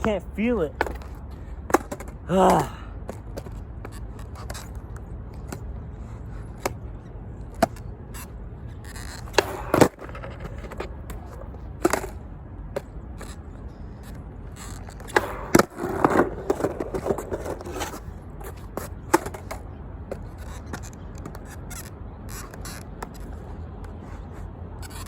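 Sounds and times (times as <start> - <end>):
skateboard clacking on concrete: 0.0 - 5.7, 6.4 - 25.0
person exclaiming: 2.3 - 2.9.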